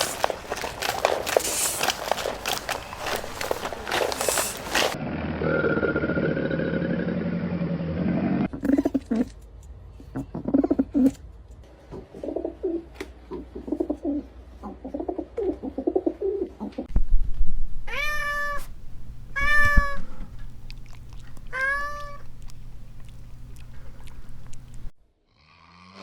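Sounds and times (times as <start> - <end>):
low steady hum: 16.9 - 25.0
cat meowing: 17.9 - 20.4, 21.4 - 22.6
soft animal chattering: 19.4 - 24.9.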